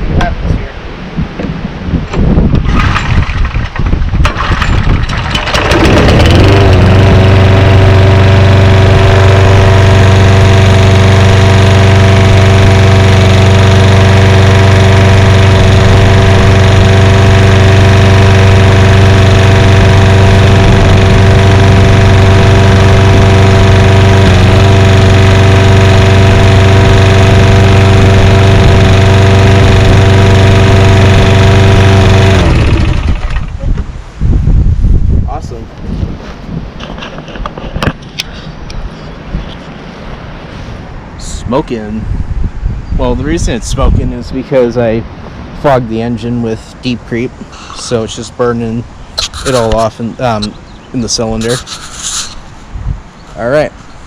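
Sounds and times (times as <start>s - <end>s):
lawnmower engine starting and running: 2.6s - 33.6s, 46.2s - 52.4s.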